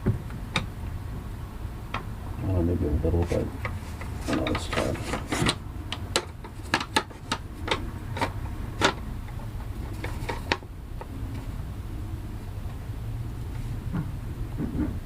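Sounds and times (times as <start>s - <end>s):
steady low hum: 0.0s - 15.0s
hardware clicks and knocks: 3.2s - 10.6s.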